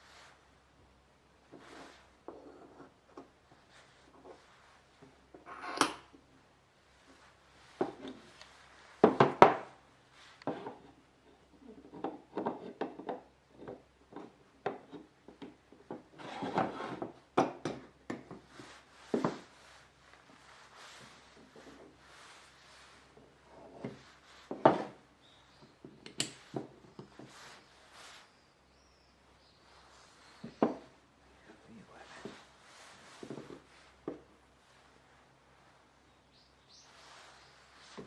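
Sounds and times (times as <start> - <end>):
wooden knocks and taps: 30.4 - 30.9.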